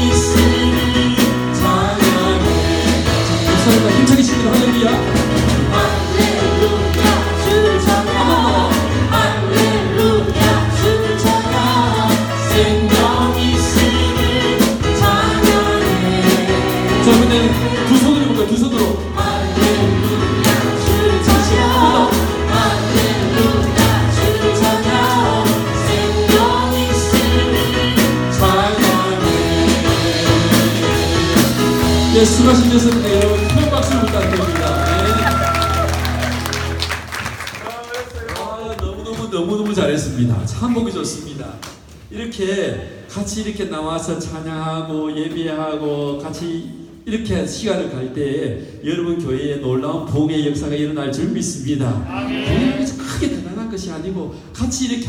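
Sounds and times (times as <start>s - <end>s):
gospel singing with band: 0.0s - 36.8s, 51.9s - 53.4s.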